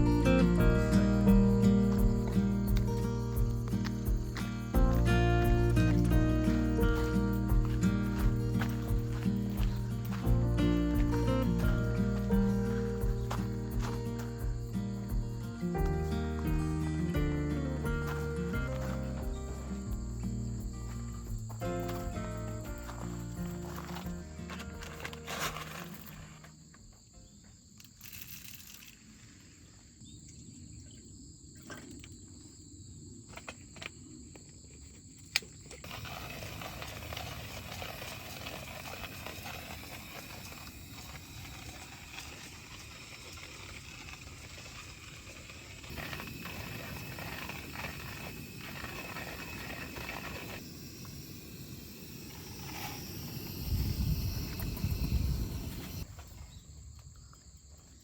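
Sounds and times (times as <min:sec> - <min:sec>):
insects chirping: 0:00.0 - 0:58.0.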